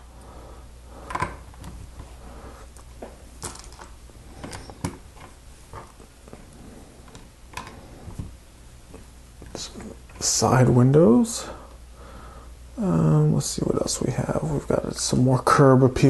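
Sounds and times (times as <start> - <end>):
steady low hum: 0.0 - 16.0
plastic pieces clicking and rattling: 3.4 - 5.3.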